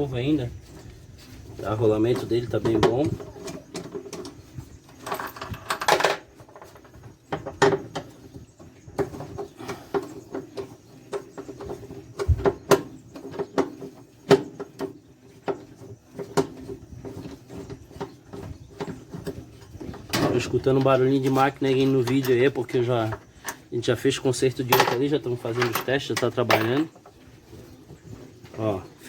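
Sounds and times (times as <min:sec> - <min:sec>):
metal rattle: 0:16.2 - 0:28.6.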